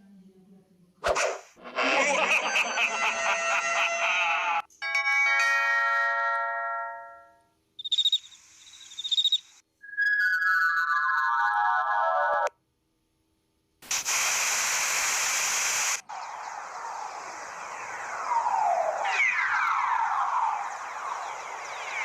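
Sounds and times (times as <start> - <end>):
loud hiss-like noise: 13.8 - 19.2
noisy sound with falling glides: 16.1 - 22.0.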